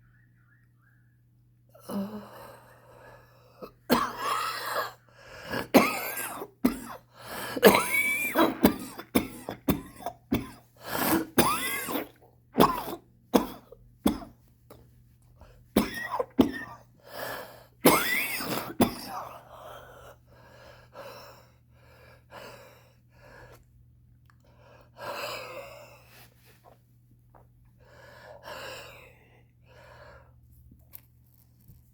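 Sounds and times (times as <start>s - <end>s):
person coughing: 3.6s - 14.4s, 15.8s - 16.9s, 17.8s - 19.4s
wheezy breaths: 4.5s - 5.7s, 7.1s - 7.7s, 17.0s - 17.8s, 19.1s - 23.6s, 27.8s - 30.4s.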